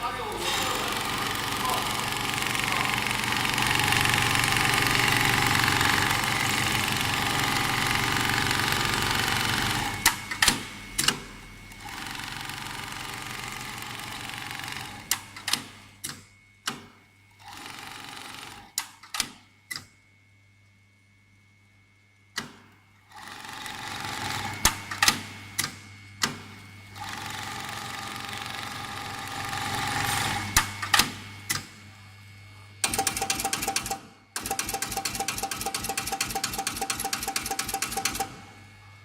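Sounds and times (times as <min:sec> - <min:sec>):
sewing machine motor hum: 0:00.0 - 0:16.1, 0:16.7 - 0:18.9, 0:23.0 - 0:31.8, 0:32.8 - 0:39.0
mechanism clicks: 0:32.8 - 0:38.4.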